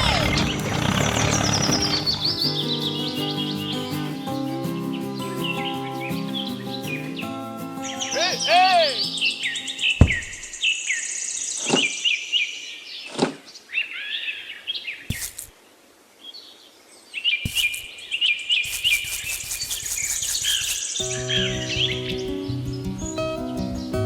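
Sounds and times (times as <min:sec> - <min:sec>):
music: 0:00.0 - 0:10.0, 0:21.0 - 0:24.0
birds chirping: 0:00.0 - 0:13.1
sharp knocks: 0:10.0 - 0:10.6.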